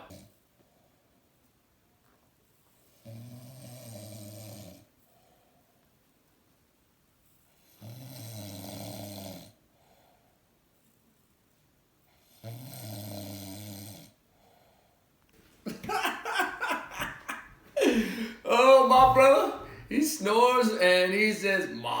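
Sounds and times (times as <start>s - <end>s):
man snoring: 3.1s - 4.8s, 7.8s - 9.6s, 12.4s - 14.1s
soft breath: 17.6s - 18.5s.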